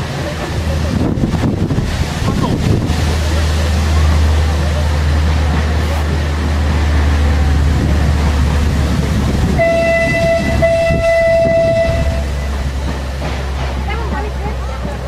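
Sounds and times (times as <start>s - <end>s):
low rumble: 0.0s - 15.0s
horn long steady note: 7.0s - 12.8s.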